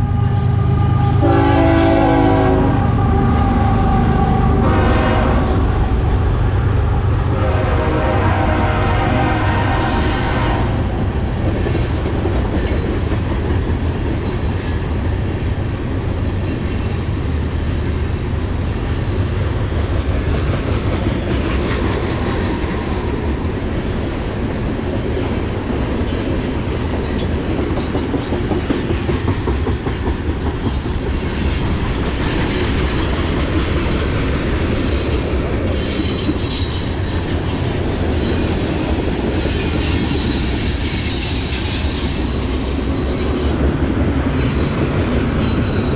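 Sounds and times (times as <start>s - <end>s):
freight train rumbling and rattling: 0.0s - 45.9s.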